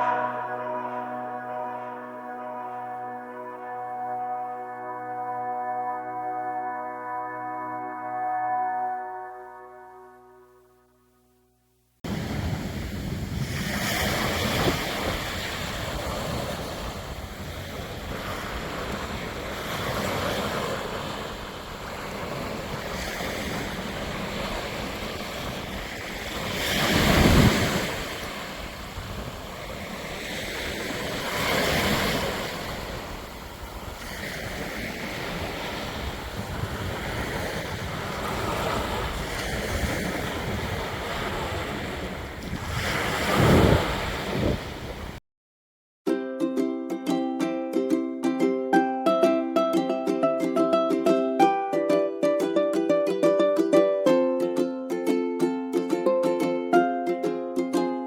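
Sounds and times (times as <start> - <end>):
gusting wind on microphone: 12.1 - 45.2.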